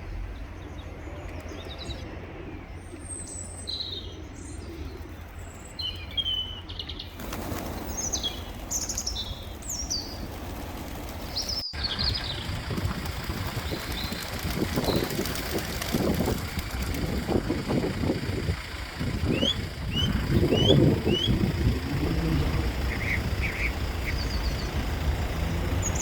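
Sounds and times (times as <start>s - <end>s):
birds chirping: 0.0s - 26.0s
wings flapping: 7.1s - 26.0s
low steady rumble: 7.8s - 26.0s.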